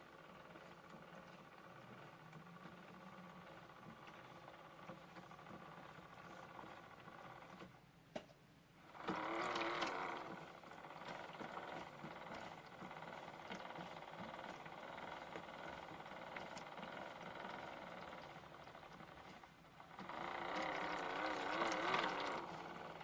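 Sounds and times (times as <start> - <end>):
small electric motor humming: 9.0 - 19.3, 19.9 - 23.0.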